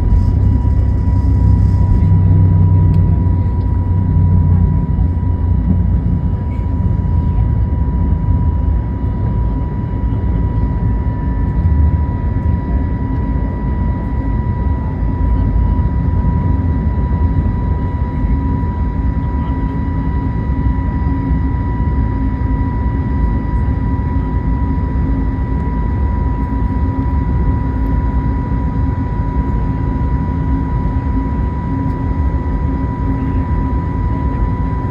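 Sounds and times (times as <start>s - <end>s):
jet engines roaring: 0.0s - 6.3s.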